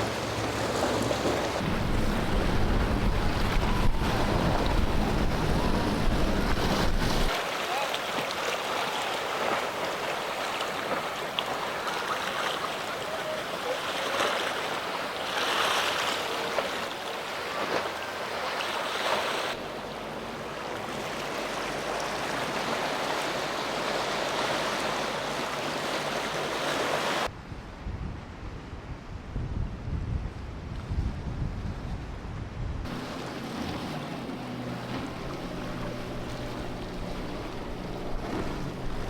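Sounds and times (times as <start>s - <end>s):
wind buffeting microphone: 0.0s - 7.4s, 19.6s - 39.0s
rushing surf and waves: 0.0s - 29.2s, 30.1s - 39.0s.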